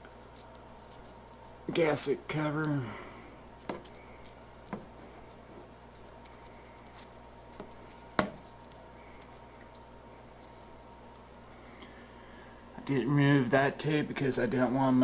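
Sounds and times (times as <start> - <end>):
low steady hum: 0.0 - 15.0.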